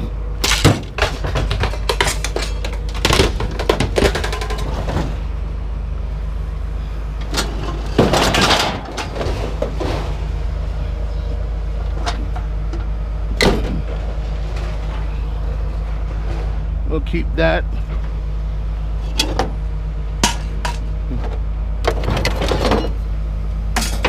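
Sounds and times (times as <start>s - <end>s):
low engine hum: 0.0s - 24.0s
scrap metal clanking: 0.4s - 5.2s, 7.2s - 10.3s, 20.2s - 23.0s, 23.8s - 24.0s.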